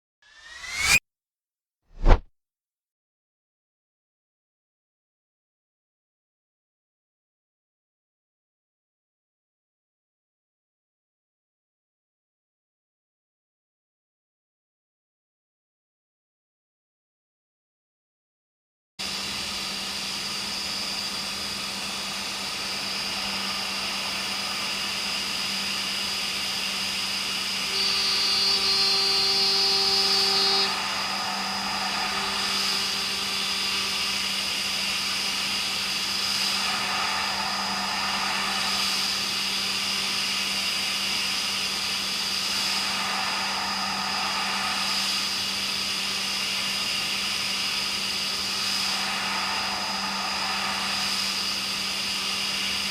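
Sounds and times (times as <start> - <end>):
metal cutting noise: 0.3 - 1.0, 21.0 - 52.9
milling spindle whine: 19.2 - 52.9.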